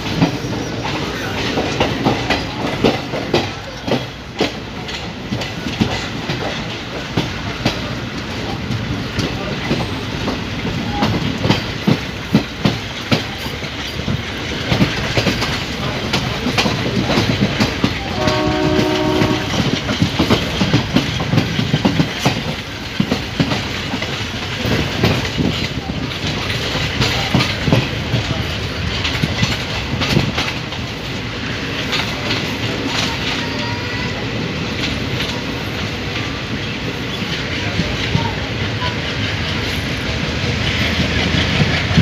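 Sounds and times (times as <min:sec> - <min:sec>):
train running with wheels clicking: 0:00.0 - 0:42.0
train horn: 0:18.0 - 0:19.8.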